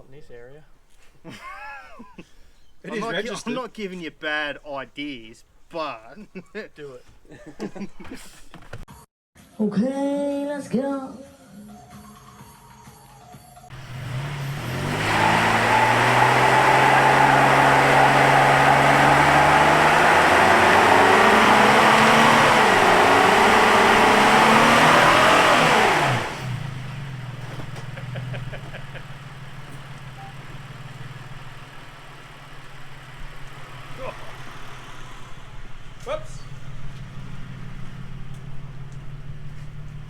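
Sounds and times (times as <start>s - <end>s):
tyres screeching: 13.7s - 38.0s
engine revving hard: 13.7s - 39.6s
engine idling: 13.7s - 40.0s.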